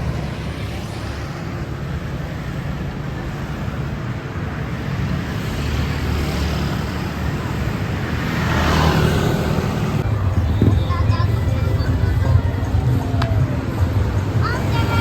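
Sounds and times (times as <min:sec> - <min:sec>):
road traffic noise: 0:00.0 - 0:15.0
heavy vehicle engine running: 0:09.0 - 0:15.0.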